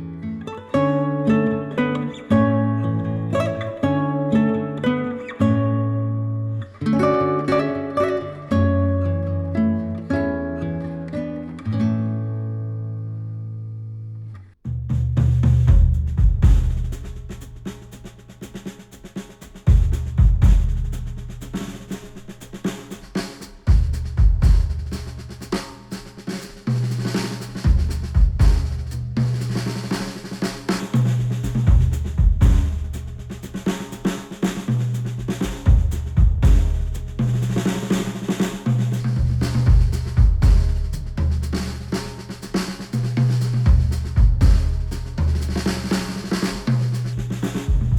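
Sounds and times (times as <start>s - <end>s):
drum-led music through headphones: 15.3s - 47.9s.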